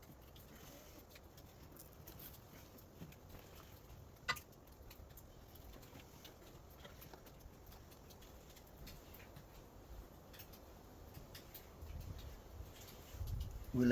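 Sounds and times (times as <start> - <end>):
light clicks and taps: 0.0 - 13.9.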